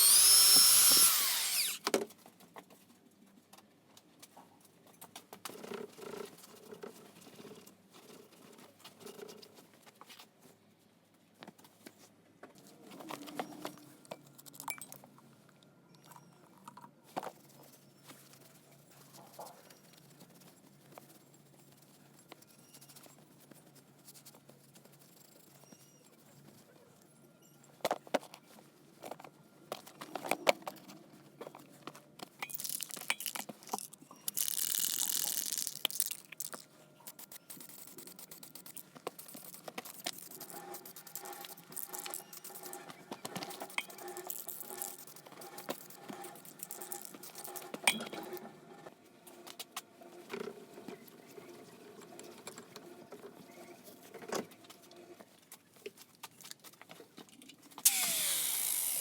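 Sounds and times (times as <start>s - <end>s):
small metal parts clinking: 32.4s - 48.4s.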